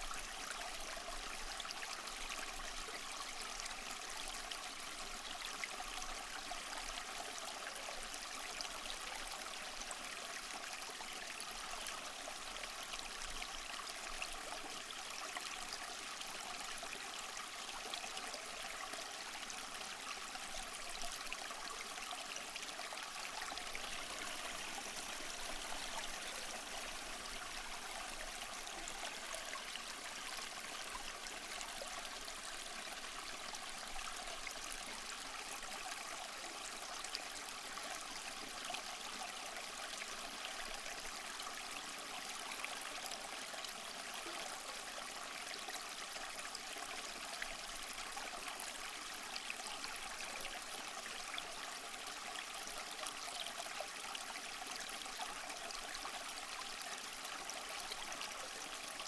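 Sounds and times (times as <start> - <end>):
small waterfall splashing: 5.6 - 41.0.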